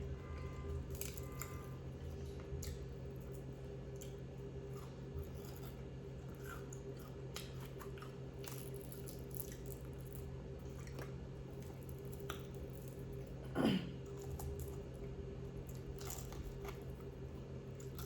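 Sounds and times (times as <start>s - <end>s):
low hum: 0.0s - 3.7s
chewing crunchy food: 0.4s - 13.4s, 14.0s - 18.0s.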